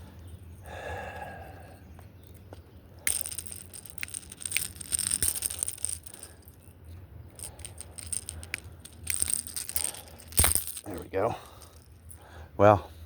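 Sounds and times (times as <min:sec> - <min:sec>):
pliers rattling against fishing lure: 0:03.0 - 0:06.7, 0:07.3 - 0:12.2.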